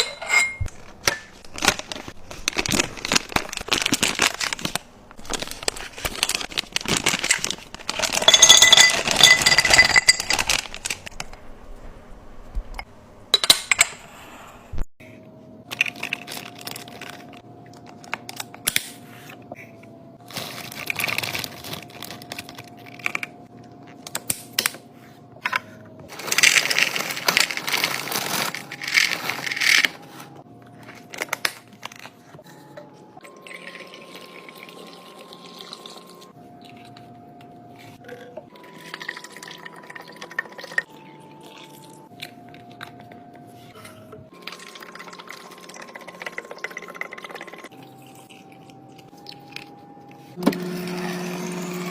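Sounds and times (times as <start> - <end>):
containers and lids clinking: 0.0 - 1.4, 7.0 - 11.2
packaging crinkling: 1.4 - 11.2, 20.2 - 23.3, 26.1 - 30.2.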